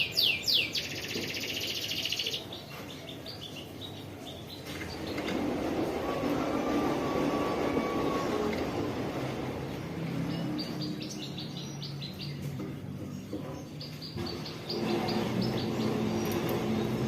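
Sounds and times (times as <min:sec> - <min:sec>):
canary singing: 0:00.0 - 0:05.4, 0:09.6 - 0:17.0.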